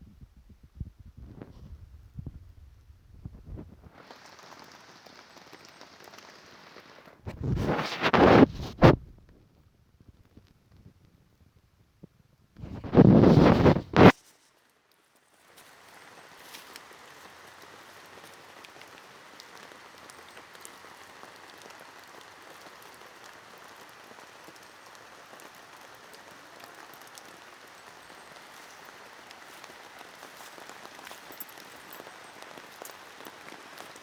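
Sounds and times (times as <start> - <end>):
rain falling: 3.9 - 8.4, 14.7 - 34.0.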